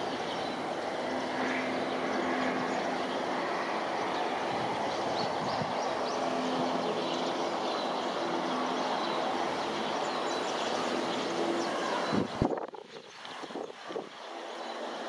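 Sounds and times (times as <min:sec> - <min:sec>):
distant jet engines rushing: 0:00.0 - 0:15.0.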